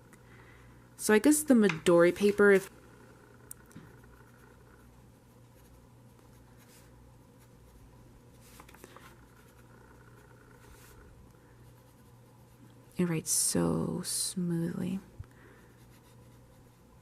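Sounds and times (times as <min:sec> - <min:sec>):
low steady hum: 0:00.0 - 0:17.0
fountain pen scratching on paper: 0:03.9 - 0:11.0, 0:11.6 - 0:12.6, 0:15.6 - 0:16.9.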